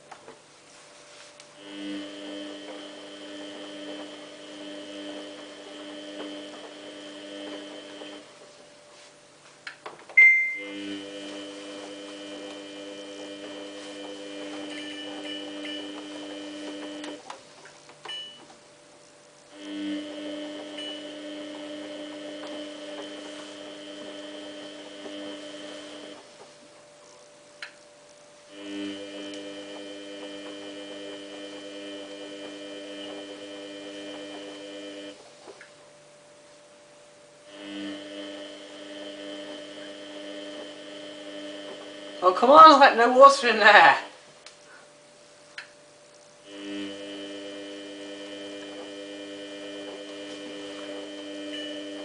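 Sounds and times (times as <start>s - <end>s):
washing machine electrical hum: 0.0s - 52.0s.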